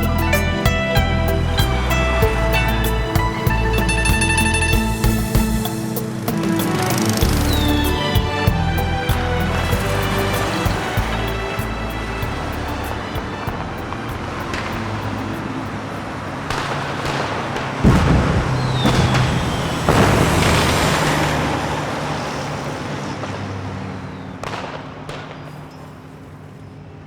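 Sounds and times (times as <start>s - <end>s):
explosion booms with rumbling tails: 17.8s - 21.6s
falling whistle: 18.6s - 21.3s.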